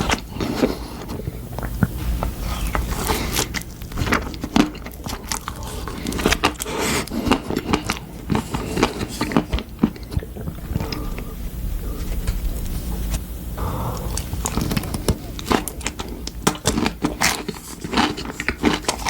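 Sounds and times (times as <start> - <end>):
person biting and chewing food: 0.0 - 19.0.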